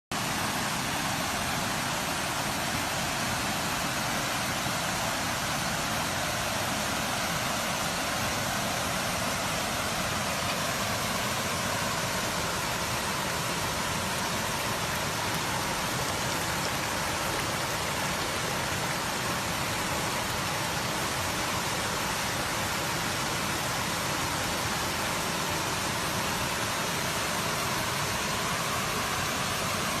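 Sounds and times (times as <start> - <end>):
waterfall roaring: 0.1 - 30.0.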